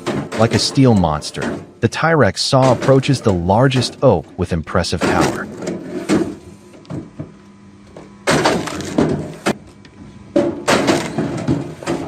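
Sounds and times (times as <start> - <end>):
faint machine hum: 0.0 - 12.0
wood cracking and breaking: 8.3 - 9.1.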